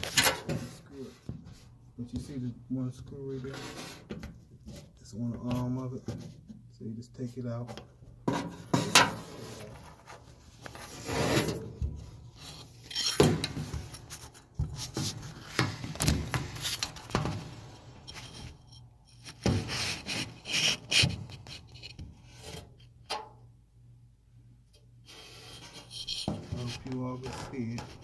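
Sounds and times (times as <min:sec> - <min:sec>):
screwdriver scraping and rubbing: 0:12.3 - 0:22.6, 0:25.1 - 0:28.0.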